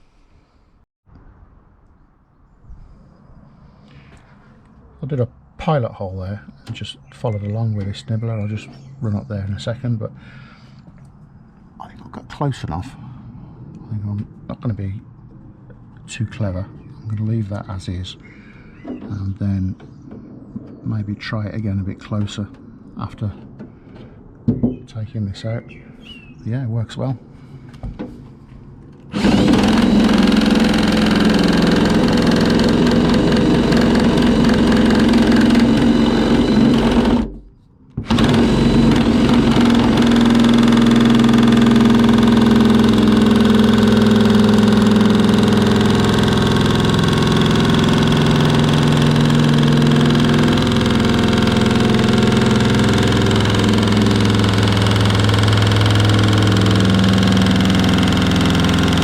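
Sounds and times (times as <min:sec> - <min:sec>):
nibbler cutting sheet steel: 0:29.1 - 0:59.0.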